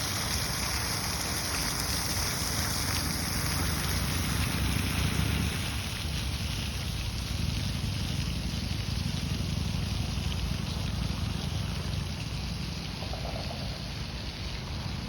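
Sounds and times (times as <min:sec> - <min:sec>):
fountain water splashing: 0:00.0 - 0:15.0
low rumble: 0:07.2 - 0:15.0.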